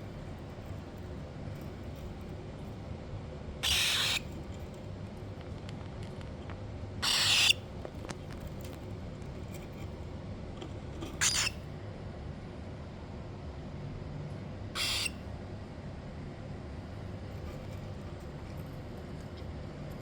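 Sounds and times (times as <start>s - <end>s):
cockatiel harsh calls: 3.6s - 4.3s, 7.0s - 7.6s, 11.2s - 11.6s, 14.8s - 15.2s.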